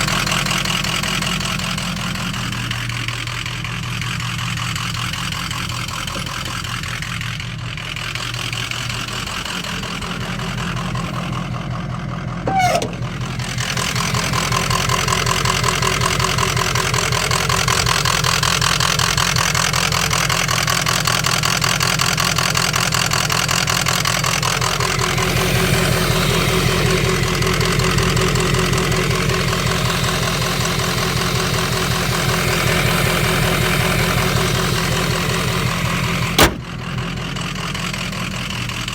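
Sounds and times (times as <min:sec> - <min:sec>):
diesel engine idling rough: 0:00.0 - 0:38.9.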